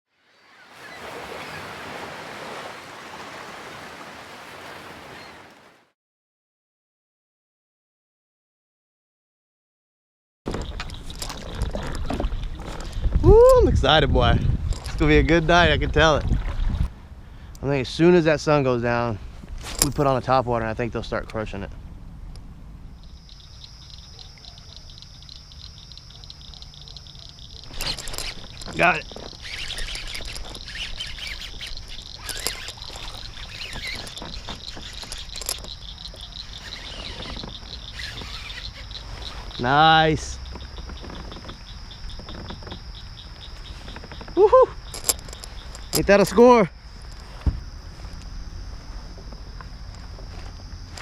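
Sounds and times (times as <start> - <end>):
insect chorus chirring: 10.5 - 16.1, 17.4 - 51.0
faint high chirps: 23.0 - 40.7.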